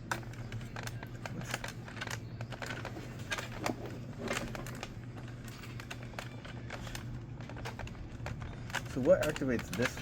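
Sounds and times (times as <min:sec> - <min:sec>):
plastic parts clicking and tapping: 0:00.0 - 0:10.0.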